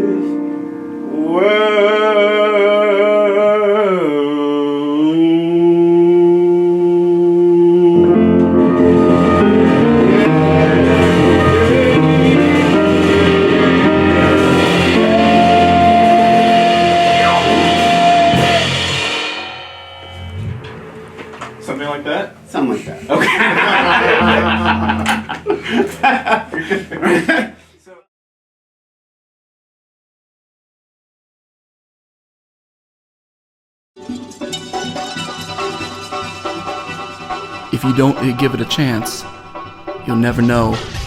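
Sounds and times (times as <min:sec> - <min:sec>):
person singing with vibrato: 0:01.0 - 0:19.4
band with bass and drums: 0:08.7 - 0:21.6.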